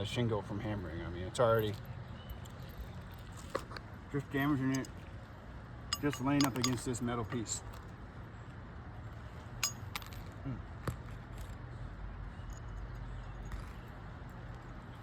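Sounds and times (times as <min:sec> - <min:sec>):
metallic tool clicks: 0:05.9 - 0:06.9, 0:09.6 - 0:10.1.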